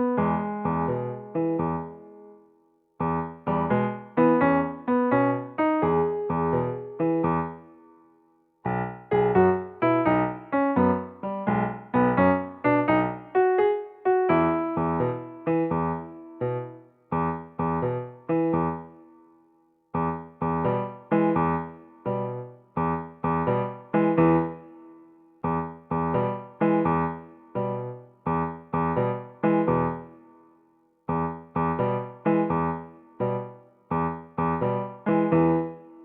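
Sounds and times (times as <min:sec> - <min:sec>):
keyboard playing melody: 0:03.1 - 0:07.7.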